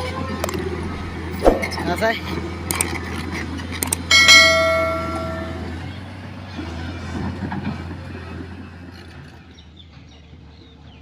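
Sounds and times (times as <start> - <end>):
heavy engine humming: 0.0 - 9.2
metallic ringing note: 4.1 - 5.9.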